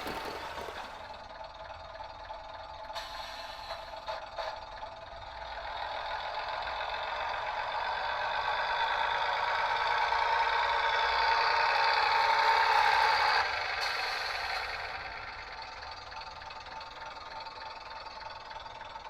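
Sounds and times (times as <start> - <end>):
model train diesel engine sound: 0.0 - 19.0.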